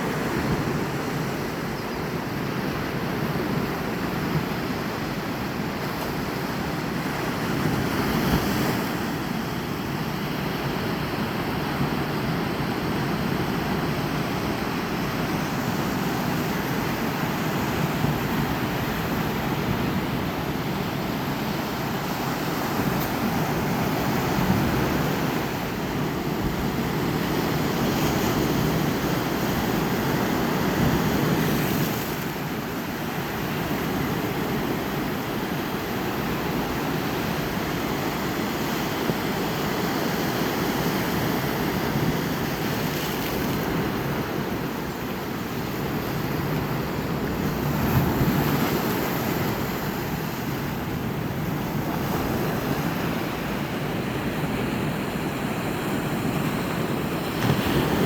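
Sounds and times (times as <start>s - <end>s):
ocean waves breaking: 0.0s - 58.0s.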